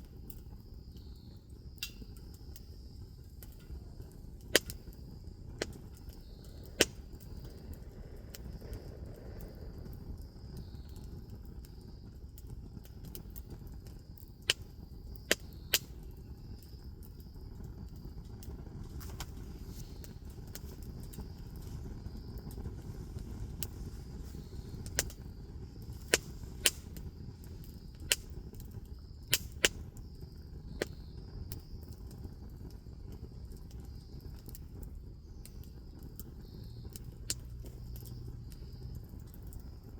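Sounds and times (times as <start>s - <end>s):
bonfire crackling: 0.0s - 39.9s
fire low rumble: 0.0s - 39.9s
insects chirring: 0.0s - 39.9s.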